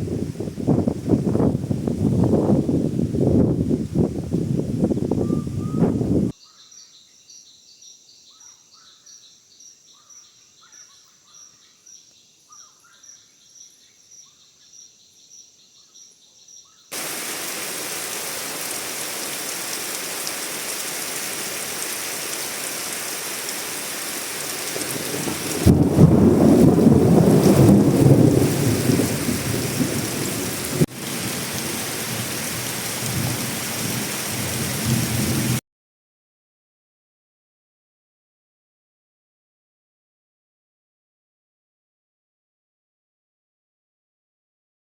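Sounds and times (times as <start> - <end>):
steady rain: 0.0 - 5.2, 16.9 - 35.6
thunder rumbling: 0.0 - 6.3, 24.2 - 35.6
bird-like chirps: 5.2 - 16.9.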